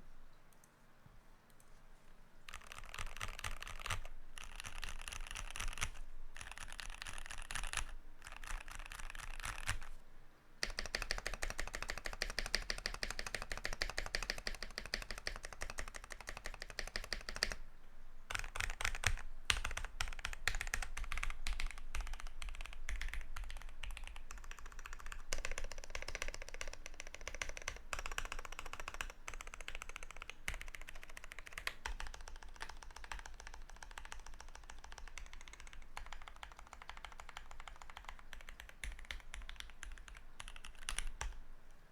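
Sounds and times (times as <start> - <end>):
fast mechanical keyboard typing: 2.5 - 9.9, 10.6 - 17.6, 18.3 - 41.4.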